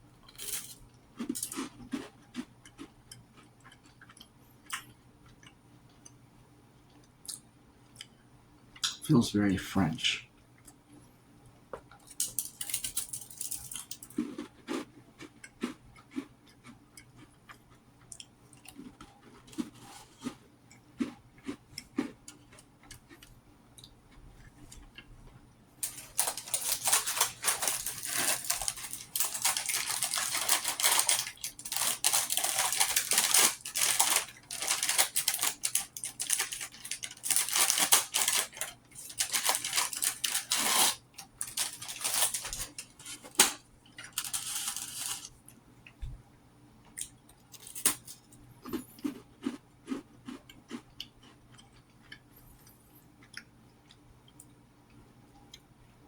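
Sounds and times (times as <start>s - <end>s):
crisp snack crackling: 25.8s - 45.3s.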